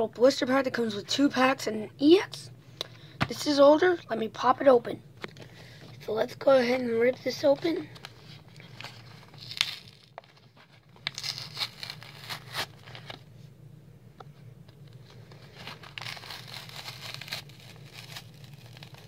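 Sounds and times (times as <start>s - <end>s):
low steady hum: 0.0s - 19.0s
blister pack being ripped open: 9.3s - 10.3s, 11.0s - 13.2s, 15.6s - 19.0s.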